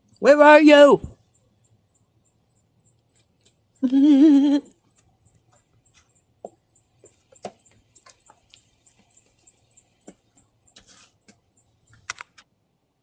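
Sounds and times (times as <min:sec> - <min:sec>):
faint clicks and ticks: 0:01.3 - 0:03.8, 0:04.7 - 0:12.6.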